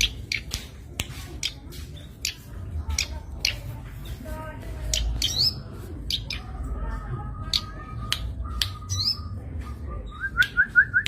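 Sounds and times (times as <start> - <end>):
bird clicking calls: 0.0 - 3.7, 4.8 - 6.6, 7.5 - 9.2.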